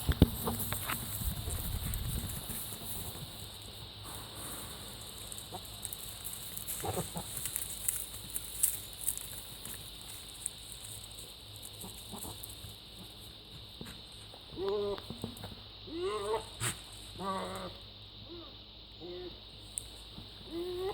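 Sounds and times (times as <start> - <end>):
rustling: 0.0 - 14.4
goat calling: 15.9 - 17.8.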